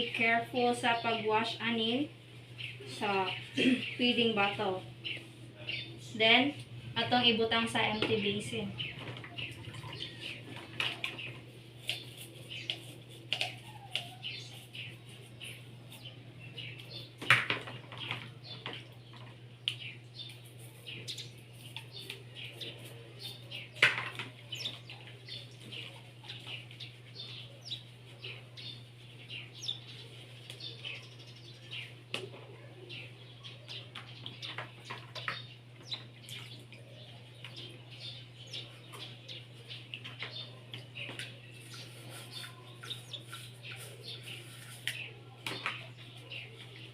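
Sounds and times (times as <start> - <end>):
steady low hum: 0.0 - 17.5
small birds chirping: 0.0 - 46.9.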